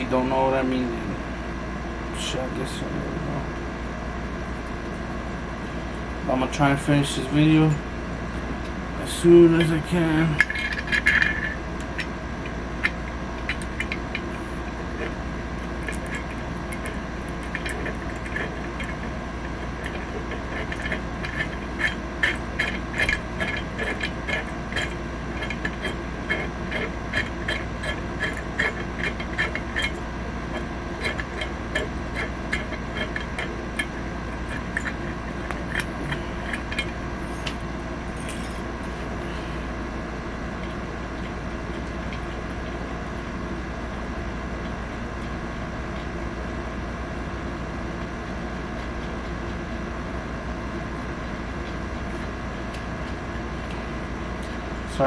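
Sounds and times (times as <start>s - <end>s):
low background hum: 0.0s - 55.0s
small hand tools clicking on metal: 19.6s - 33.9s.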